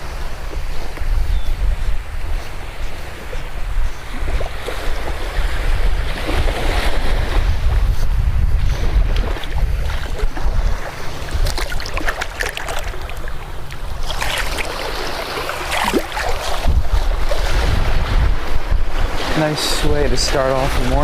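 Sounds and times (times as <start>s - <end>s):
wind buffeting microphone: 0.0s - 21.0s
breaking surf: 8.9s - 18.3s.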